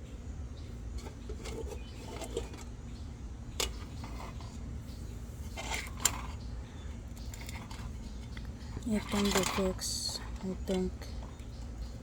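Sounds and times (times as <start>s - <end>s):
bird feeder rustling and clinking: 1.0s - 2.8s, 5.4s - 6.5s, 7.2s - 12.0s.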